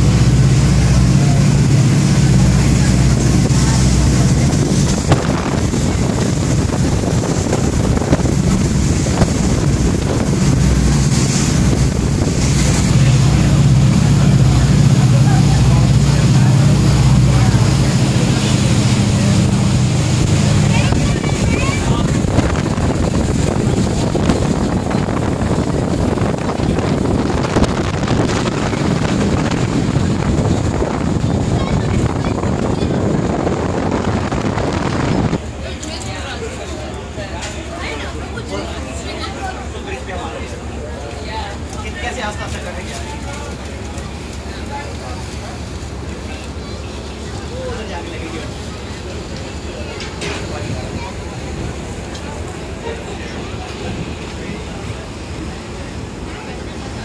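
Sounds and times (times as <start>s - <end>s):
wind buffeting microphone: 0.0s - 36.1s
ferry engines droning: 0.0s - 57.0s
rushing water: 0.0s - 57.0s.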